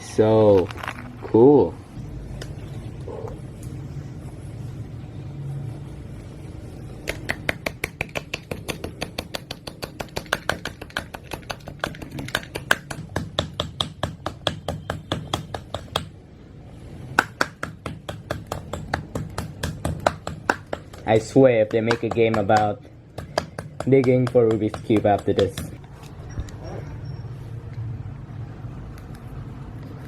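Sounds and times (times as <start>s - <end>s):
tool chipping ice: 17.2s - 25.8s.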